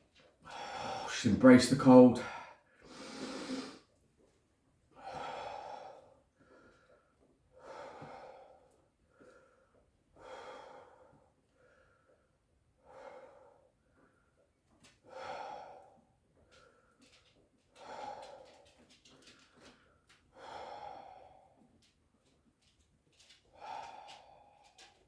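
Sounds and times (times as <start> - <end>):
man breathing deeply: 0.5 - 1.1, 2.3 - 3.8, 5.0 - 13.7, 15.0 - 16.0, 20.3 - 21.6.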